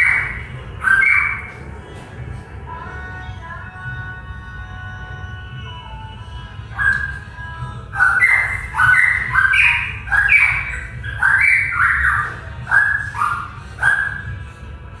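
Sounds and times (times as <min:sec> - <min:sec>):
songbird whistled song: 0:00.0 - 0:02.9, 0:06.6 - 0:15.0.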